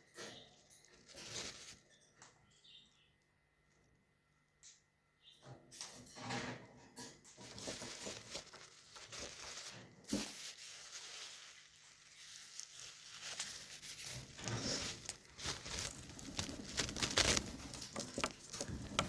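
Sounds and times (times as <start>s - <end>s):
scratchy rustling: 0.9s - 1.8s, 7.4s - 19.0s.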